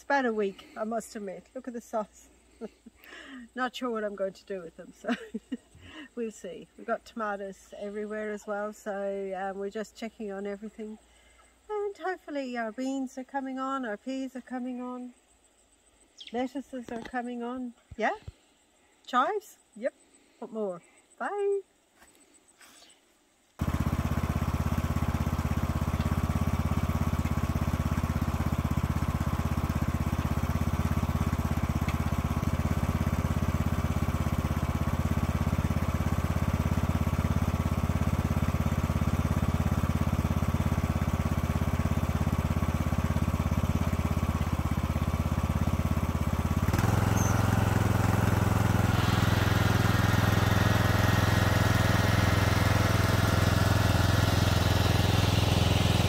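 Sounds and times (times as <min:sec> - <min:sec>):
small engine running: 0:23.6 - 0:56.0.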